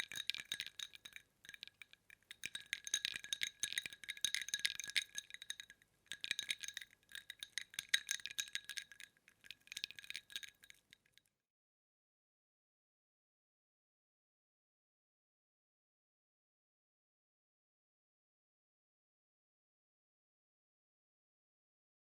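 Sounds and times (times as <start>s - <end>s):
ice cubes clinking: 0.0s - 10.9s.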